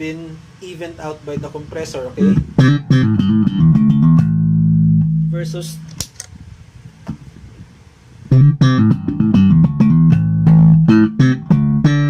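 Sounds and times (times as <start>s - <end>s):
slap bass notes: 2.1s - 5.9s, 8.3s - 12.0s.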